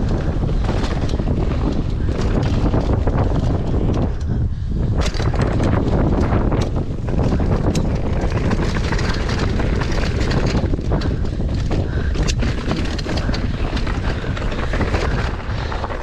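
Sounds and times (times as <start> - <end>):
bike clicks and knocks: 0.0 - 16.0
wind rushing over microphone: 0.0 - 16.0.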